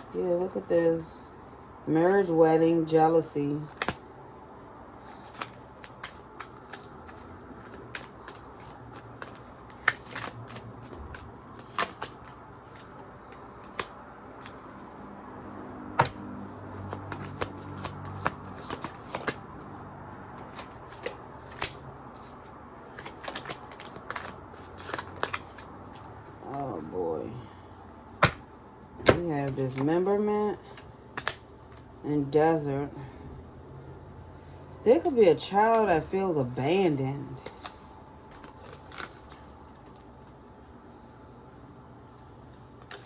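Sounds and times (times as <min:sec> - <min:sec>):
cards being shuffled: 0:03.6 - 0:04.0, 0:05.0 - 0:15.0, 0:16.0 - 0:19.6, 0:20.4 - 0:27.0, 0:30.7 - 0:31.9, 0:37.4 - 0:40.4, 0:42.1 - 0:43.0.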